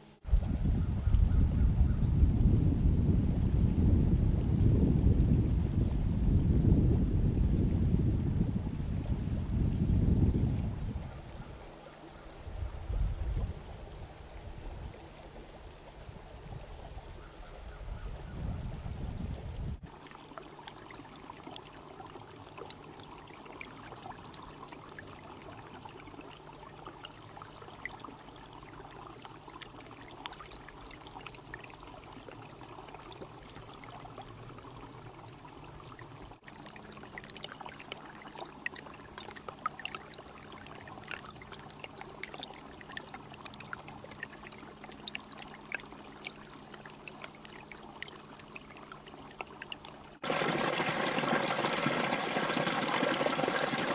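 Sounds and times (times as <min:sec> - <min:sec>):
water trickling and dripping: 0:18.9 - 0:53.9.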